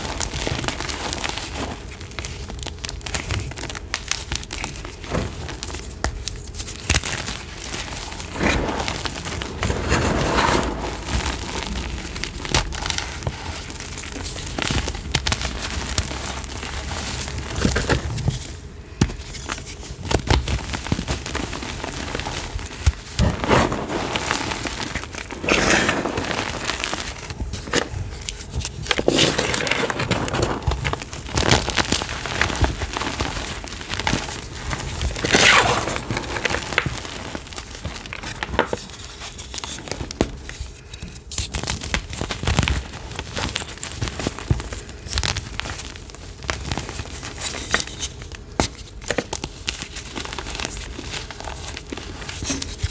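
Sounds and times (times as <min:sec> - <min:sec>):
chalk crunching and crumbling: 0:04.6 - 0:18.3, 0:19.2 - 0:40.4.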